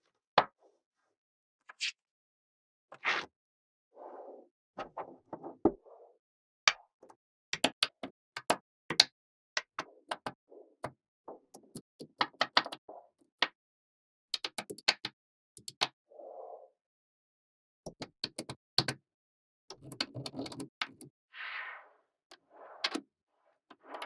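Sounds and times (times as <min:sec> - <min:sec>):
magnetic balls clicking together: 0:14.4 - 0:15.9, 0:19.7 - 0:21.1.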